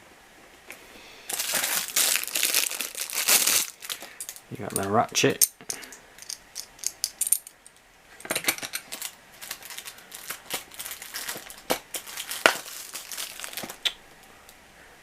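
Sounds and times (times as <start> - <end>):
metal tools clinking: 4.2 - 9.1.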